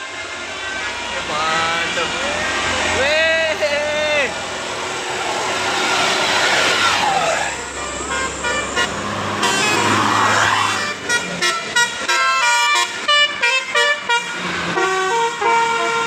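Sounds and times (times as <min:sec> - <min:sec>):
bus engine passing: 0:00.0 - 0:16.0
musical air horn tune: 0:07.8 - 0:10.1, 0:10.7 - 0:16.0.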